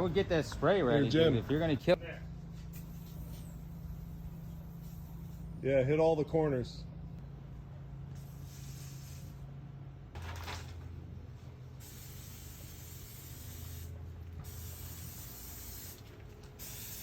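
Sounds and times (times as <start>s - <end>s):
steady low hum: 0.0s - 17.0s
aerosol can spraying: 11.8s - 17.0s.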